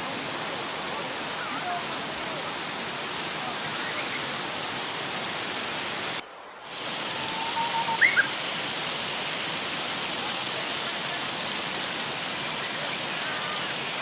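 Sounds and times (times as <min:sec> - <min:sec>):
mountain stream rushing: 0:00.0 - 0:14.0
bird chirping: 0:07.3 - 0:08.3.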